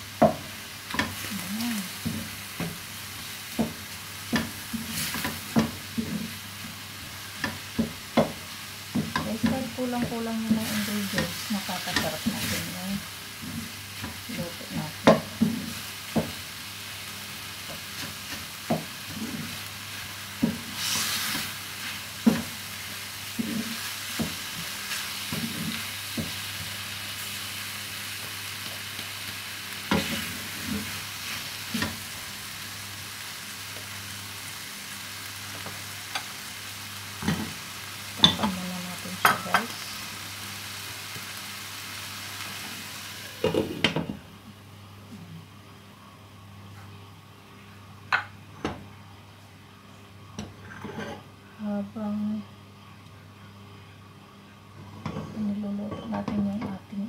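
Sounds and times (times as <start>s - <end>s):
food sizzling in a pan: 0.0s - 44.6s.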